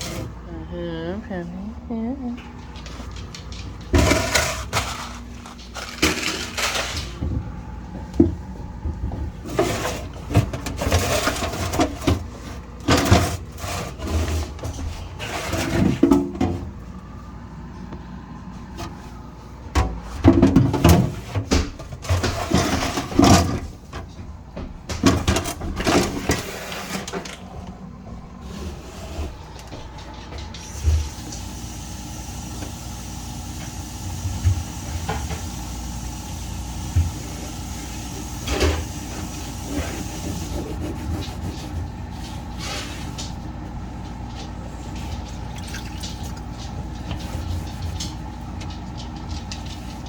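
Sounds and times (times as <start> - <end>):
scrubbing and scraping: 2.6 - 7.2, 9.2 - 16.8, 20.0 - 24.3, 25.0 - 31.1, 38.8 - 43.4, 44.1 - 50.0.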